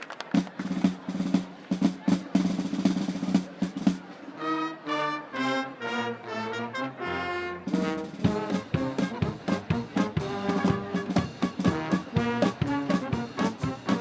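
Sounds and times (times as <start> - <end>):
drums keeping a steady beat: 0.0 - 4.4, 7.6 - 14.0
brass band playing a march: 0.4 - 14.0.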